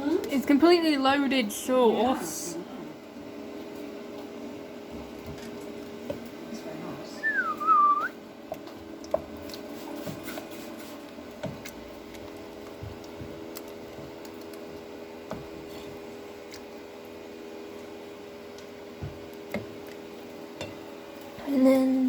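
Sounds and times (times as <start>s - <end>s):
pots and utensils tapping: 18.6s - 20.8s.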